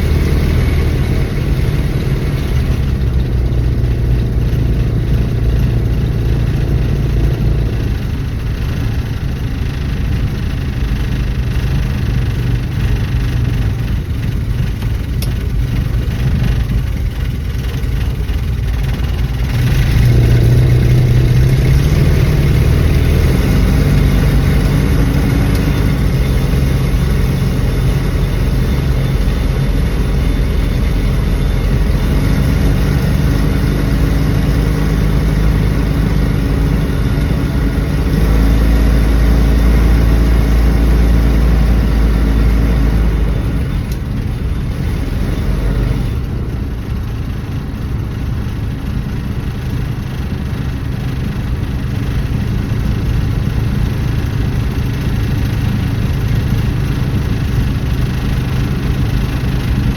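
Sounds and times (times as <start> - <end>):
car engine running: 0.0 - 59.9
deep drone: 0.0 - 59.9.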